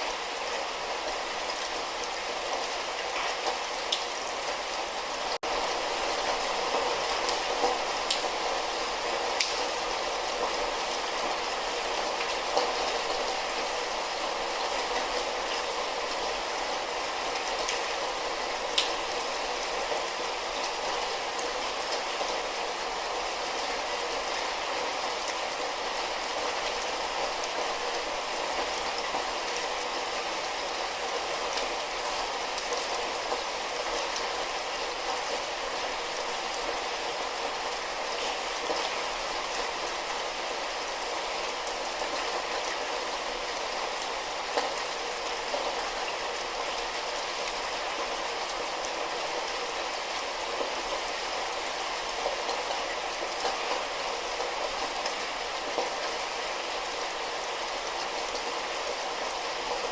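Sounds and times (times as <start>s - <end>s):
light rain hiss: 0.0s - 59.9s
raindrop ticks: 7.3s - 8.4s, 9.4s - 9.7s, 18.8s - 19.0s.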